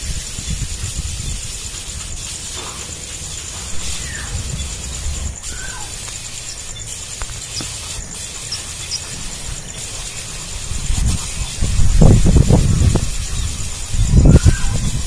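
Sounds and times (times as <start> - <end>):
faint bird chirps: 0.0 - 15.0
low rumble: 2.2 - 7.4.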